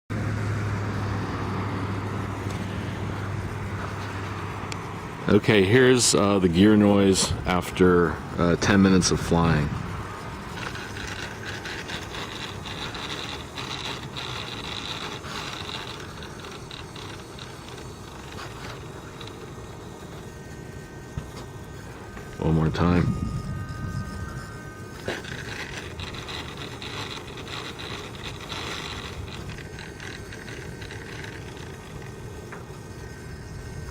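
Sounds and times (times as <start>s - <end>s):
high whine: 0.1s - 33.9s
gritty rasping gear noise: 1.2s - 33.9s.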